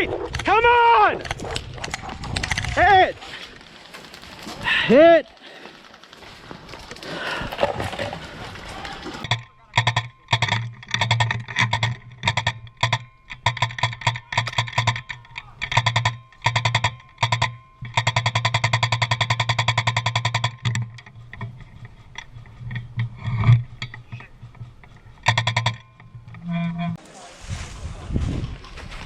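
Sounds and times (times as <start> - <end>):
gearbox motor hum: 7.6 - 27.0.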